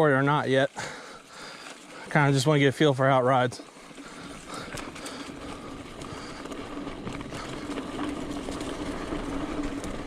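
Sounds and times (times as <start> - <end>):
bike tyre rumble: 0.0 - 10.0
bike clicks and rattles: 3.6 - 10.0.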